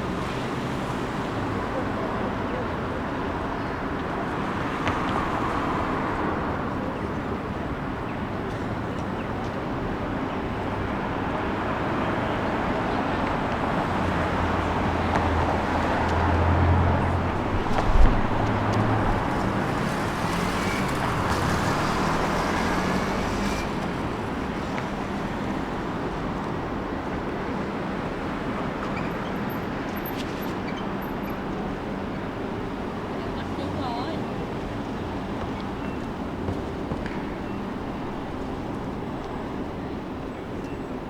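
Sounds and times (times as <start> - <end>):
traffic noise: 0.0 - 41.0
heavy vehicle low rumble: 14.2 - 26.1.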